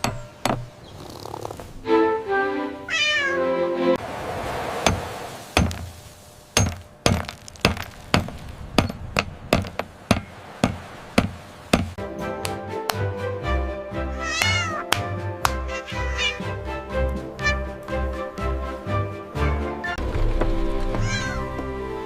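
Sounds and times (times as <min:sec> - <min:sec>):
sharp knocks: 0:00.0 - 0:00.8, 0:04.8 - 0:06.0, 0:06.6 - 0:13.0
background music: 0:01.8 - 0:04.0, 0:12.0 - 0:22.0
cat meowing: 0:02.9 - 0:03.5, 0:14.1 - 0:14.9, 0:15.6 - 0:16.6, 0:17.4 - 0:17.8, 0:21.0 - 0:21.6.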